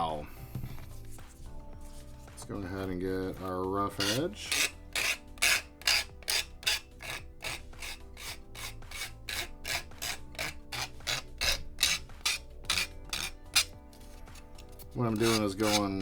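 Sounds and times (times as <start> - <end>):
sanding block rubbing plastic: 3.4 - 16.0.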